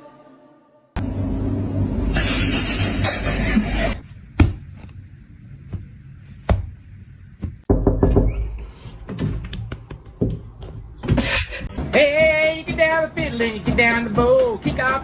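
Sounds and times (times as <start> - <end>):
sharp knocks: 7.4 - 11.3.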